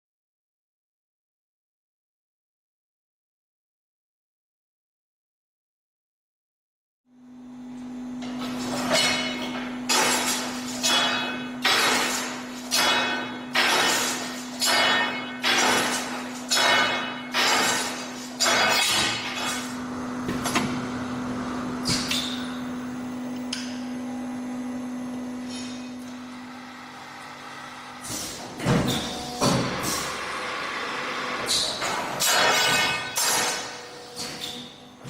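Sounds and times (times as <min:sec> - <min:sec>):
machine motor hum: 0:19.1 - 0:32.3.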